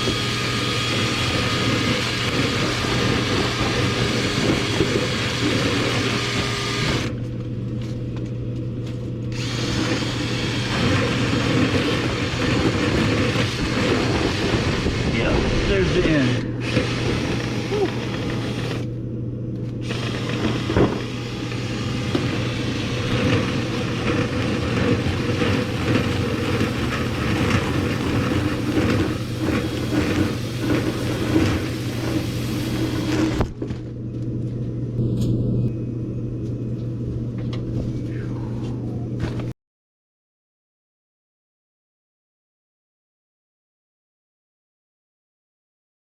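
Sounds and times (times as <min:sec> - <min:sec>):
rattling and scraping: 0:00.0 - 0:07.2, 0:09.4 - 0:18.8, 0:19.8 - 0:33.8
motor humming: 0:00.0 - 0:36.9.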